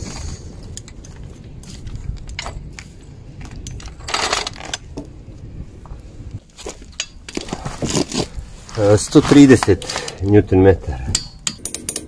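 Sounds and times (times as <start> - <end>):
metal tools clinking: 3.4 - 4.8, 6.8 - 7.6, 11.0 - 12.0.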